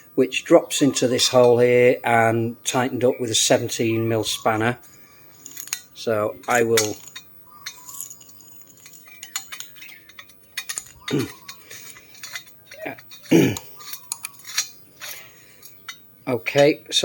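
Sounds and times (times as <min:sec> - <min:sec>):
spanner clicking on metal: 0:05.4 - 0:16.0.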